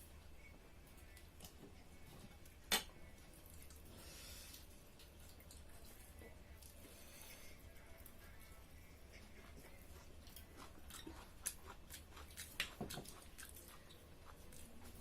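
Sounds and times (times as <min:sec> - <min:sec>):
chewing: 0:04.5 - 0:07.1, 0:07.8 - 0:15.0.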